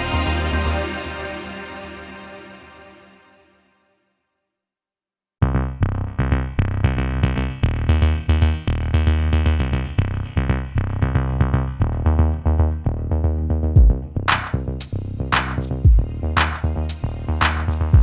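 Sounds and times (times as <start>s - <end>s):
electronic music with drum machine: 13.8s - 18.0s.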